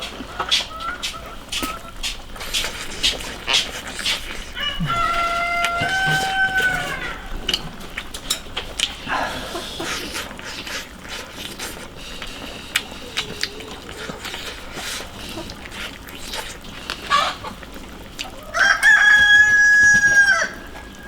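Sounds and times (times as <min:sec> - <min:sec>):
rooster crowing: 0:04.5 - 0:07.5, 0:18.4 - 0:21.0.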